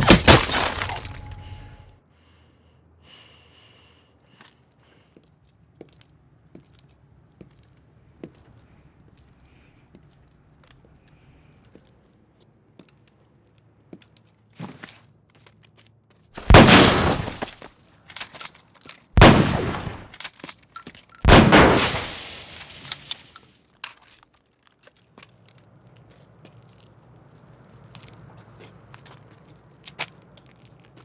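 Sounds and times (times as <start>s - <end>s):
glass breaking: 0.0s - 1.8s, 16.4s - 18.4s, 19.2s - 20.2s, 21.2s - 23.5s
echoing gunshots: 16.4s - 17.6s, 19.2s - 20.2s, 21.3s - 23.4s.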